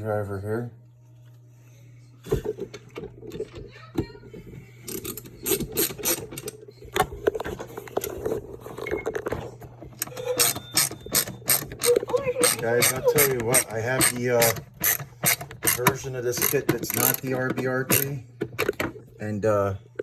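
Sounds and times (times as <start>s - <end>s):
screwdriver bit clicking and scraping: 4.9s - 6.5s, 10.0s - 18.8s.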